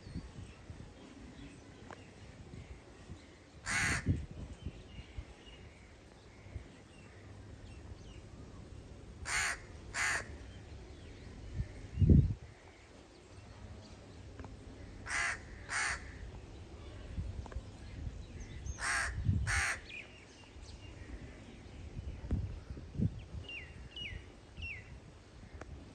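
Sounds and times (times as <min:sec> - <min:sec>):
crow cawing: 0:03.6 - 0:04.1, 0:09.2 - 0:10.3, 0:15.0 - 0:16.2, 0:18.8 - 0:19.9.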